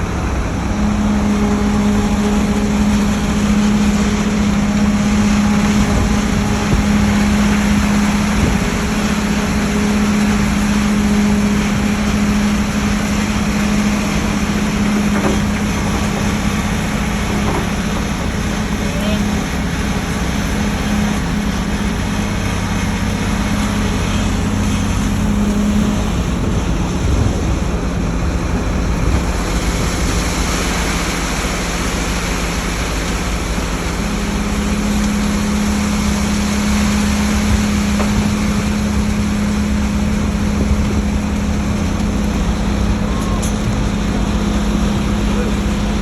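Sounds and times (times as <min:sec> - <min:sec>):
constant rushing noise: 0:00.0 - 0:46.0
machinery engine humming: 0:00.0 - 0:46.0.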